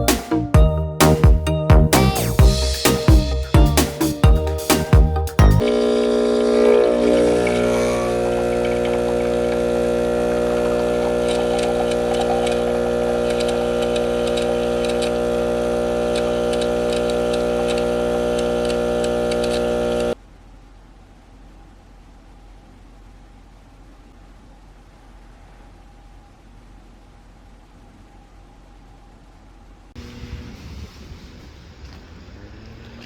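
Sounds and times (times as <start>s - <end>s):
appliance motor humming: 5.6s - 20.2s.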